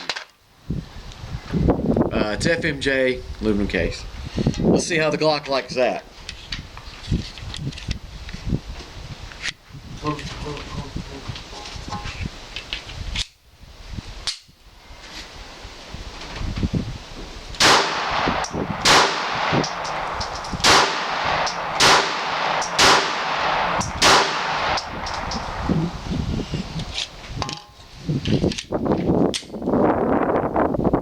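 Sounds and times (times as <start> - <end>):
gun handling clicks: 12.5 - 13.4, 17.6 - 25.6, 26.8 - 28.7
pistol shots: 17.6 - 25.6.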